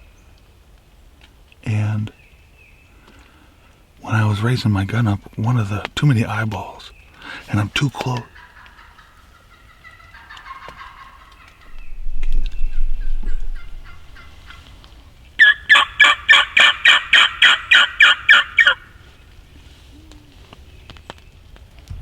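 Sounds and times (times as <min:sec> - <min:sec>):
turkey call yelps: 0:08.3 - 0:11.7, 0:15.4 - 0:18.9
low rumble: 0:11.6 - 0:15.3.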